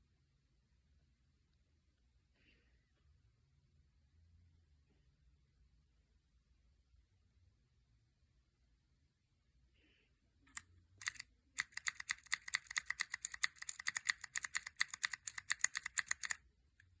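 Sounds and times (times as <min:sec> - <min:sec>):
mechanical key switch clicking: 0:11.0 - 0:16.4.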